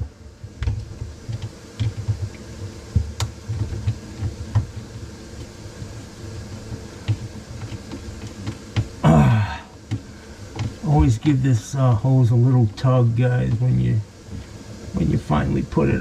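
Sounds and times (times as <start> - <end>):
faint steady hum: 0.0 - 16.0
light clicks and knocks: 0.5 - 9.0, 9.8 - 11.3
hose handling thumps: 9.8 - 11.4.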